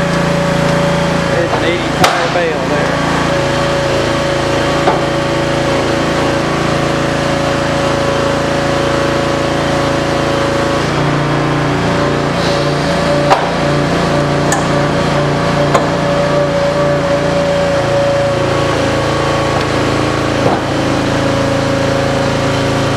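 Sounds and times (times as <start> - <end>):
engine running: 0.0 - 22.9
sharp knock: 2.0 - 2.4.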